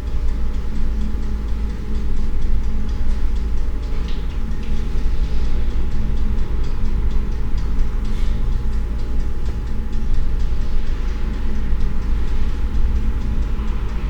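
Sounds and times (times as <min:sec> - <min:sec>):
faint irregular ticks: 0:00.0 - 0:14.0
low rumble: 0:00.0 - 0:14.0.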